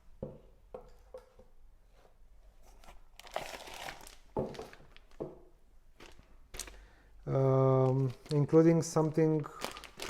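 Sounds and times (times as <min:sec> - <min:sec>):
paper rustling and crinkling: 0:02.6 - 0:05.2, 0:07.6 - 0:10.0.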